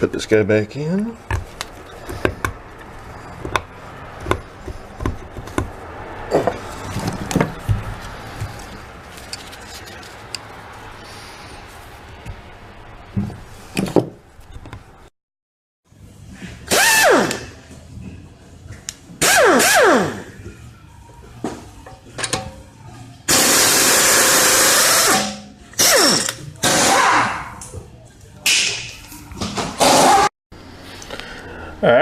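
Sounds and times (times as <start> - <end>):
air impact wrench whirring: 16.7 - 17.5, 19.2 - 20.3, 23.3 - 27.1.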